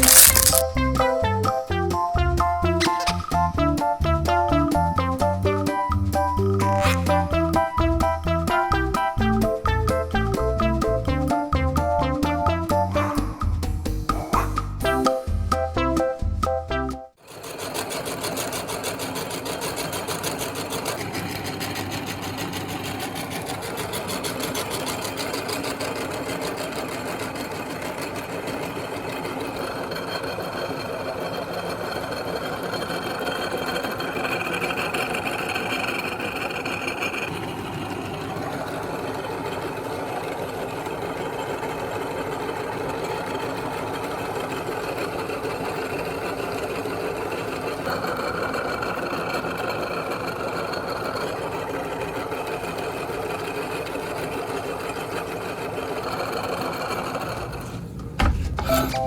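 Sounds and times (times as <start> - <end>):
electric meat grinder running: 17.3 - 57.6.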